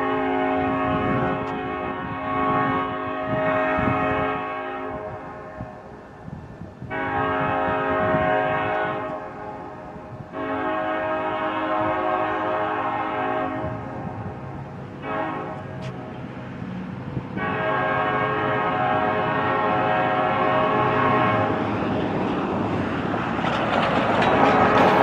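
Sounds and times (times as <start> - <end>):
locomotive air horn blasts: 0.0 - 5.9, 6.8 - 14.3, 15.0 - 16.2, 17.3 - 21.6
train rumble: 0.0 - 25.0.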